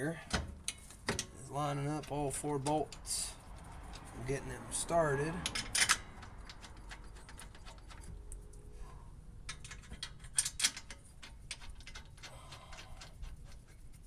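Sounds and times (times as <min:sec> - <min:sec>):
metallic clicks of bolts: 0:05.4 - 0:08.1, 0:09.4 - 0:13.3.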